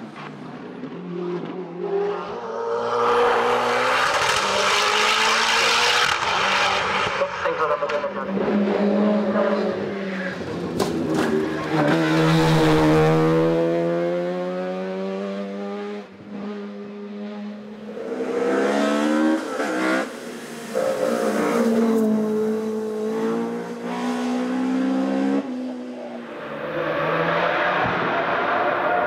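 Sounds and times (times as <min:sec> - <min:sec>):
race car engine accelerating: 0:10.6 - 0:25.5.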